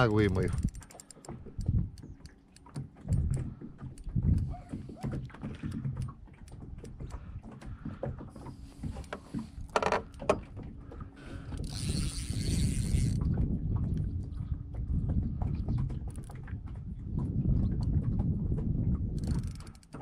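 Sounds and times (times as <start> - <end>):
fishing reel clicking and winding: 0.0 - 1.3, 11.5 - 13.2, 19.2 - 20.0.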